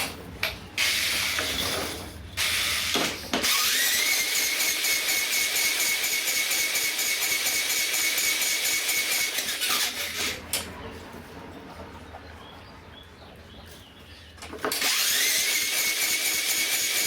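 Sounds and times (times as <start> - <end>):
electric drill whine: 0.8 - 10.4, 14.7 - 17.0
small engine cranking: 0.8 - 10.4, 14.6 - 17.0.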